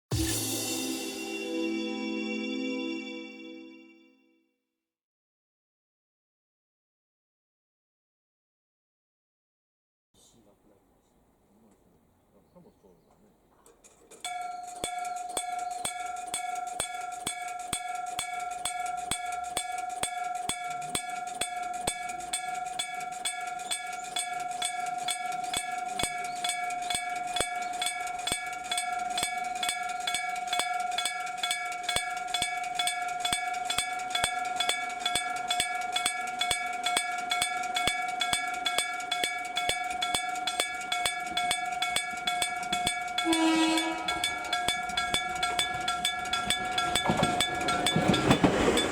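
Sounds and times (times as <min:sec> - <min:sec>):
level crossing warning bell: 0:00.1 - 0:04.0, 0:13.8 - 0:48.9.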